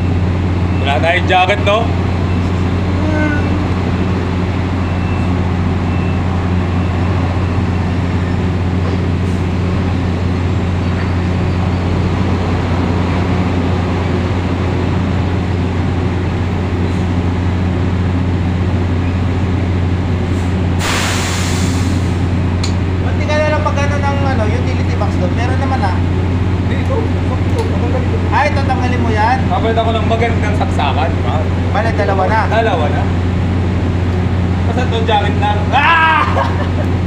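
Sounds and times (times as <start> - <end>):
short hiss: 20.8 - 22.1.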